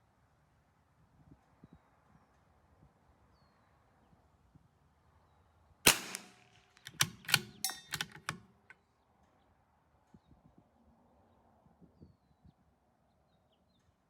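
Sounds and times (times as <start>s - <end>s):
rifle shot with echo: 5.9s - 8.5s
rifle bolt clicks and clanks: 5.9s - 8.7s.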